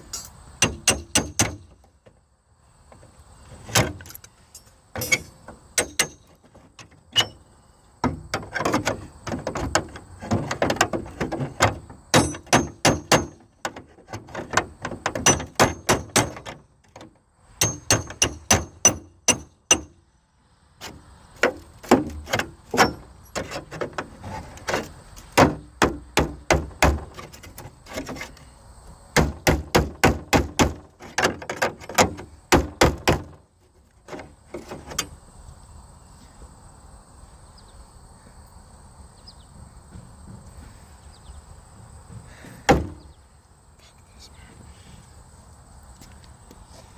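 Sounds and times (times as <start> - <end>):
sharp knocks and thuds: 0.6 - 2.2, 5.0 - 7.4, 8.0 - 20.0, 20.8 - 28.5, 29.1 - 35.2, 41.8 - 43.2.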